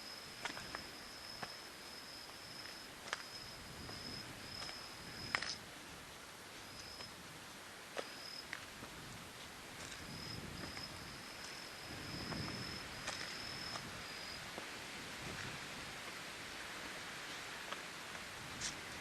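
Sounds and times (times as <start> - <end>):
insect trilling: 6.6 - 7.2, 9.9 - 14.4
sharp clicks and scuffs: 17.7 - 19.0.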